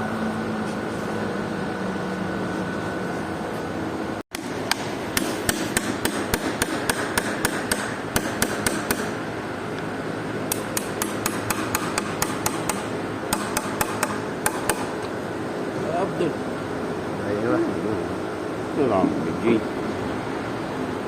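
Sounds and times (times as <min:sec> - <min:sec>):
machine hum: 0:00.0 - 0:21.0
rapid hammer blows on metal: 0:04.3 - 0:09.2, 0:10.5 - 0:15.1.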